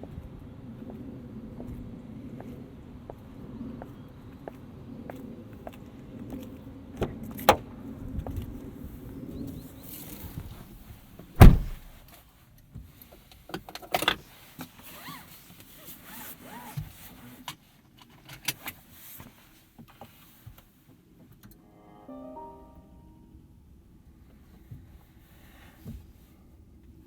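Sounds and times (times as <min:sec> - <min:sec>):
car door shutting: 0:11.4 - 0:12.0.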